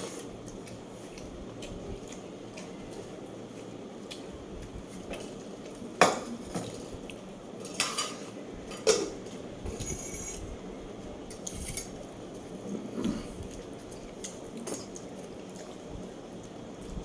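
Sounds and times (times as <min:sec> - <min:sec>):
utensils clinking against a plate: 0:07.6 - 0:10.5.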